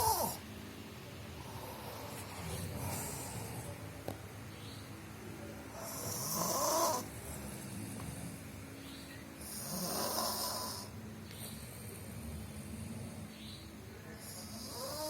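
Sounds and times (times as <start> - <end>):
person snoring: 14.3 - 15.0.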